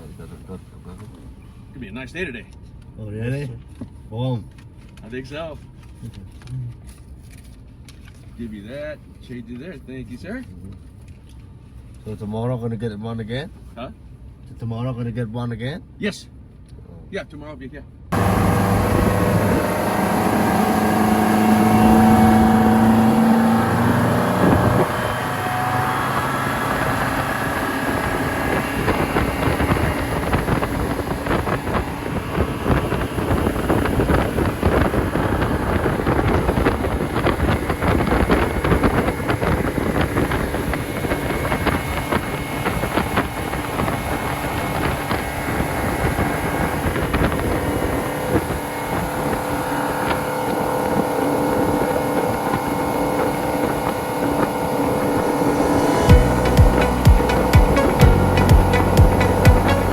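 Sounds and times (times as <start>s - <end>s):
motorboat engine: 18.1s - 59.9s
wind noise on microphone: 18.1s - 59.9s.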